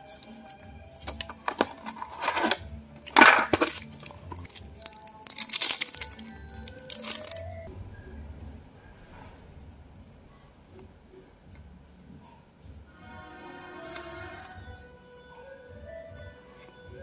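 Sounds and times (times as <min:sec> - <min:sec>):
soft background music: 0:00.0 - 0:17.0
packaging torn and rustled: 0:00.2 - 0:07.7.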